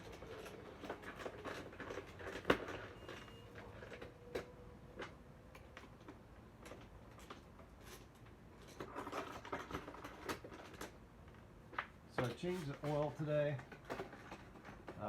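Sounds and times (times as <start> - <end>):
clicks and knocks of small objects: 0.0 - 15.0.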